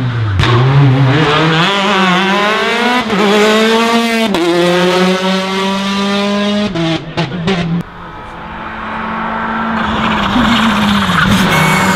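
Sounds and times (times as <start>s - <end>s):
car engine accelerating: 0.0s - 11.9s.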